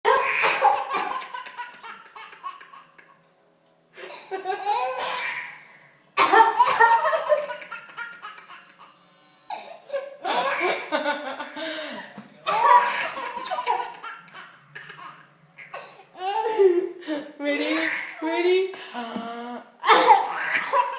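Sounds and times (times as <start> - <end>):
baby laughing: 0.1 - 3.2, 4.2 - 5.6, 6.3 - 10.9, 12.5 - 16.9, 19.8 - 20.9.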